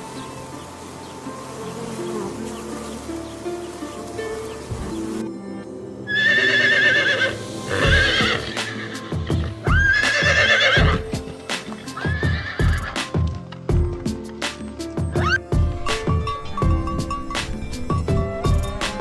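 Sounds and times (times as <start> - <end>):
background music: 0.0 - 19.0
horse neighing: 6.1 - 11.1.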